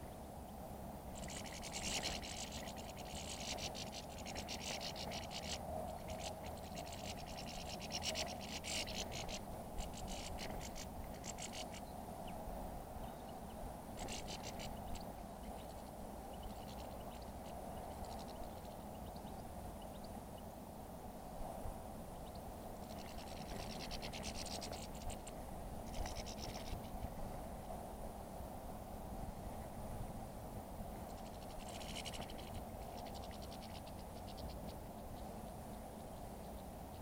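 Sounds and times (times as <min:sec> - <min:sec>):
low background hum: 0:00.0 - 0:37.0
birds pecking scratchy clicking: 0:01.2 - 0:11.8.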